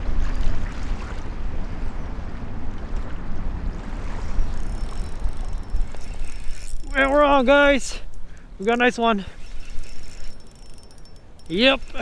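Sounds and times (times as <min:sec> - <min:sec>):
gusty wind on microphone: 0:00.0 - 0:08.6
choppy water: 0:00.0 - 0:12.0.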